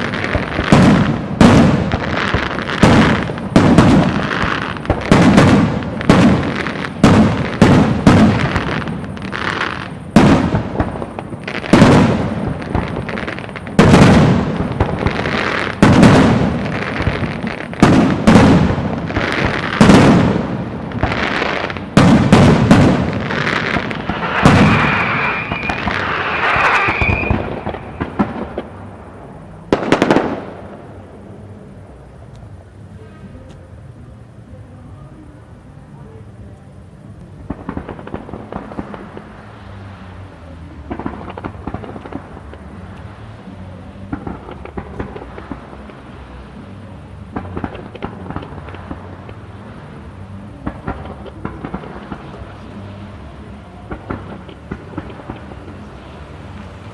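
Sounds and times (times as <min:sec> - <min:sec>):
firework shells bursting: 0:00.0 - 0:28.8
firework crackling: 0:00.0 - 0:56.9
whistling fireworks: 0:00.0 - 0:56.9.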